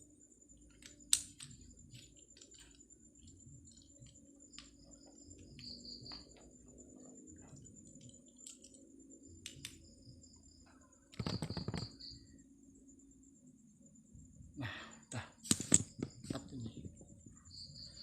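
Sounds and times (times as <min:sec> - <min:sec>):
crickets chirring: 0:00.0 - 0:18.0
rustling and handling noise: 0:00.6 - 0:08.9.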